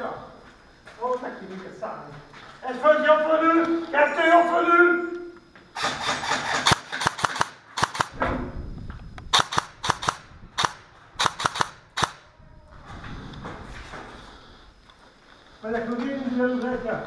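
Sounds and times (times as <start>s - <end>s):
airsoft guns firing: 5.8s - 8.3s, 9.3s - 12.3s.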